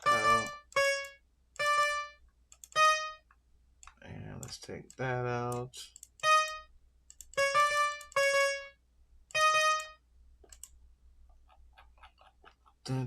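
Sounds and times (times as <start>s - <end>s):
synthesizer electric piano notes: 0.0s - 3.2s
faint clicks: 2.5s - 6.2s, 7.1s - 7.4s, 10.4s - 13.0s.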